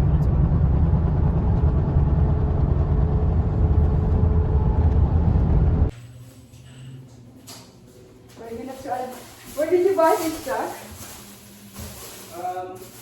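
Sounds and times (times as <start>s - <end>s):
steady low rumble: 0.0s - 5.9s.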